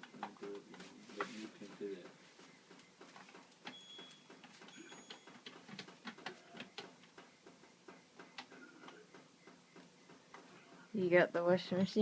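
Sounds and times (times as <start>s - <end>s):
short high beeps: 3.7s - 5.3s.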